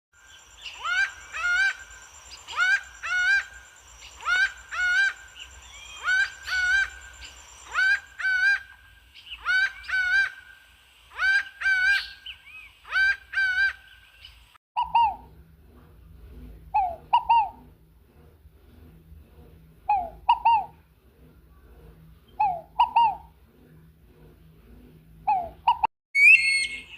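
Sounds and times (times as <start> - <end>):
low hum: 0.2 - 26.9
lower bird call in pairs: 25.3 - 26.9.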